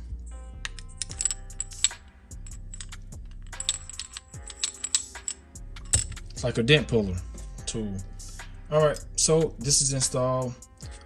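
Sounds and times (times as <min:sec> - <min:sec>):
background music: 0:00.0 - 0:11.0
small metal parts clicking: 0:00.6 - 0:06.4.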